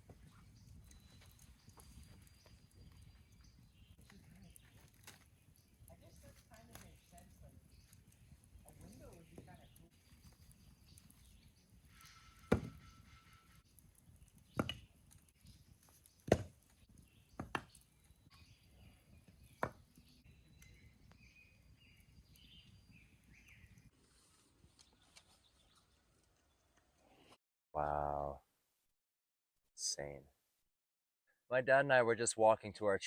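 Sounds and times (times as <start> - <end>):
faint bird chirps: 0.0 - 16.2, 16.8 - 23.9
sharp knocks: 12.5 - 12.8.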